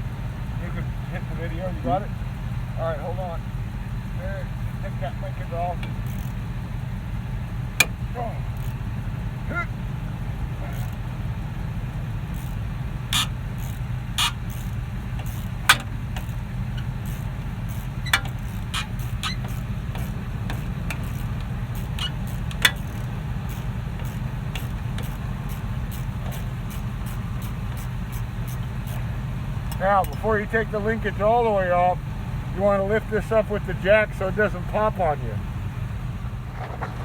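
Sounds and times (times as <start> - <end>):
low mechanical hum: 0.0 - 37.0
hand tools clicking on metal: 5.8 - 6.4, 12.3 - 30.3.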